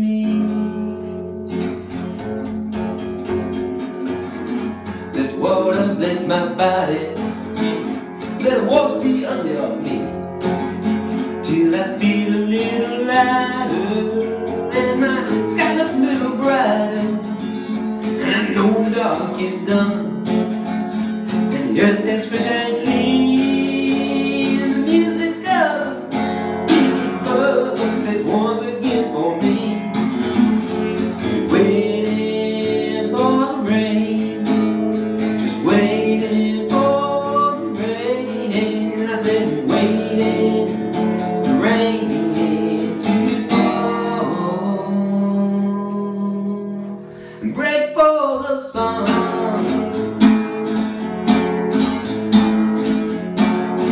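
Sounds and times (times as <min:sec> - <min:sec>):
person singing: 0:00.0 - 0:01.2, 0:05.1 - 0:10.2, 0:11.4 - 0:17.4, 0:18.2 - 0:20.5, 0:21.5 - 0:30.1, 0:31.2 - 0:34.6, 0:35.4 - 0:50.2
acoustic guitar: 0:00.0 - 0:53.9.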